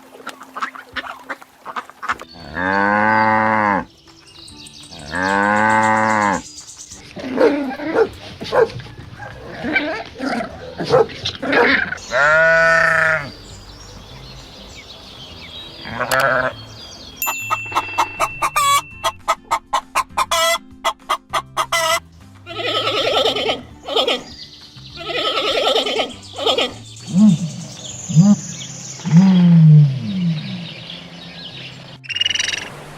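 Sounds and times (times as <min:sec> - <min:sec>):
poultry calling: 0:05.0 - 0:06.4, 0:07.2 - 0:13.4, 0:15.8 - 0:32.7.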